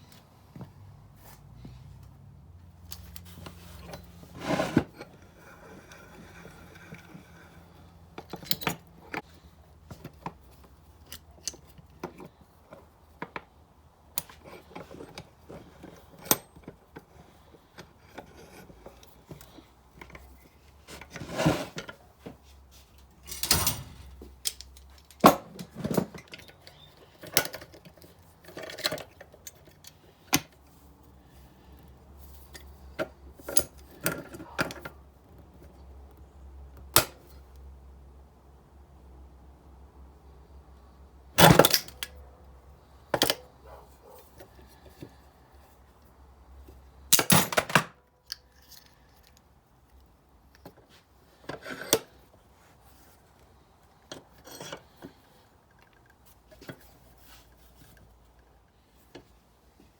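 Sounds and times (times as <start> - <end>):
metal hand tools clinking: 23.2 - 25.3.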